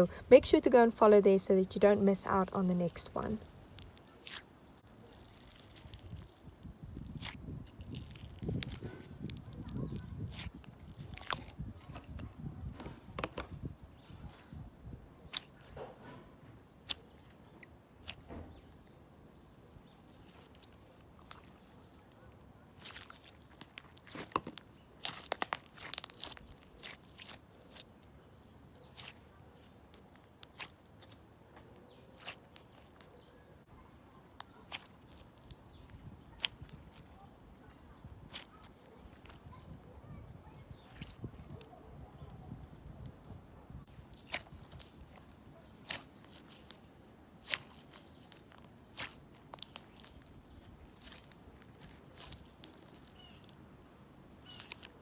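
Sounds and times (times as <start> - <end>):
slime crackling and popping: 1.9 - 12.1, 15.3 - 15.8, 16.8 - 33.1, 34.4 - 37.1, 38.0 - 39.8, 43.9 - 55.0.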